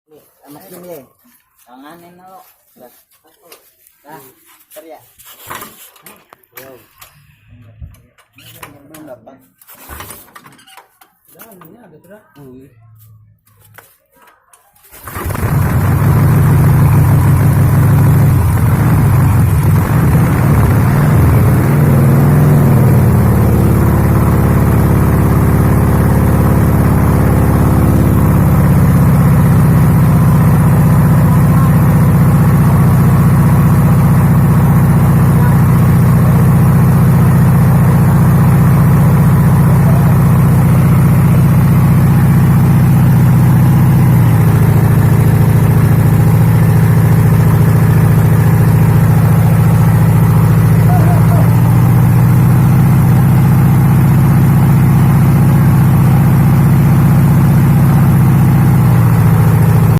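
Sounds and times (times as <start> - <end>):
pump engine running: 14.9 - 59.9.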